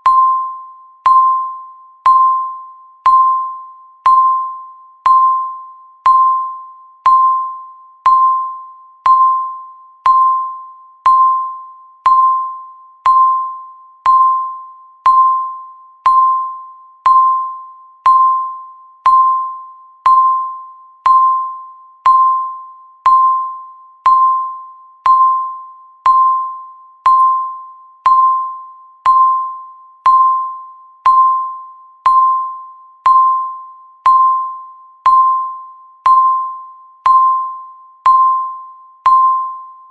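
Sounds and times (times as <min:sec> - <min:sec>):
timer beeps: 0:00.0 - 0:39.9.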